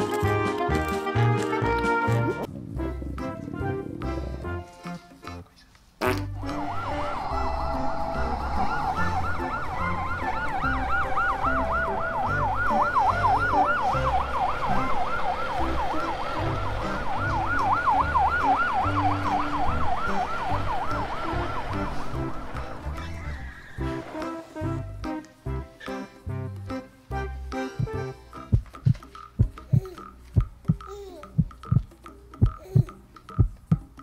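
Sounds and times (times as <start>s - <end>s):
siren yelping: 6.4s - 24.0s
steady low beat: 27.2s - 34.0s.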